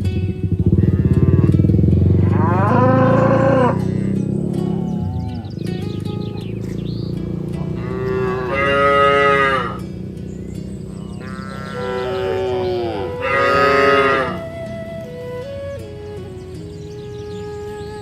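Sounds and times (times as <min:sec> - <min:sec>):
cows mooing: 0:00.8 - 0:05.7, 0:06.5 - 0:09.8, 0:10.9 - 0:14.4.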